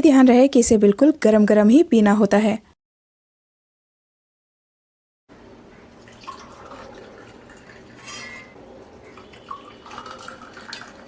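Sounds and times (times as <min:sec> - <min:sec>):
liquid trickling into a cup: 0:05.9 - 0:11.0
utensils clinking against a cup: 0:06.2 - 0:11.0.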